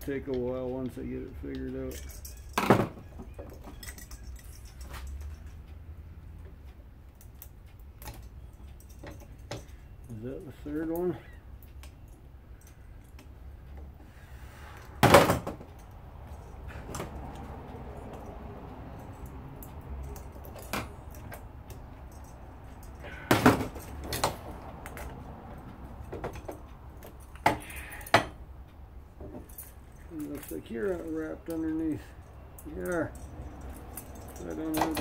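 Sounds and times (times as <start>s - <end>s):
metal parts knocking and clinking: 0.3s - 5.7s, 7.2s - 10.2s, 19.0s - 25.2s, 25.9s - 28.4s, 29.2s - 35.0s.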